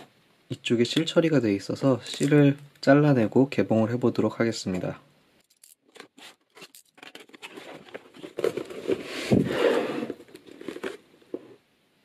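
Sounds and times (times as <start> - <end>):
cardboard packaging rustling: 5.4 - 11.6.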